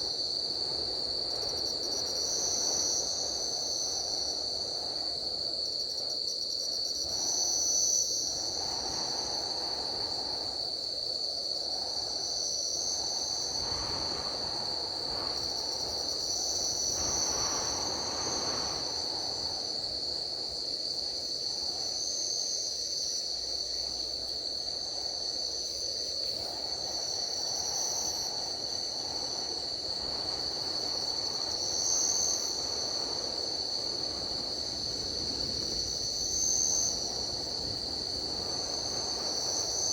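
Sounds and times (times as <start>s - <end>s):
higher insect call: 0.0s - 39.9s
insect high-pitched drone: 0.0s - 39.9s
low rushing hiss: 12.8s - 21.7s.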